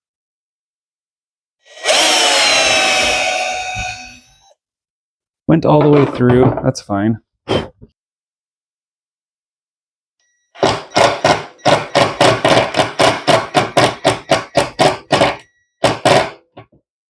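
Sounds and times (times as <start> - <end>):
fast sharp knocks: 10.6 - 16.5.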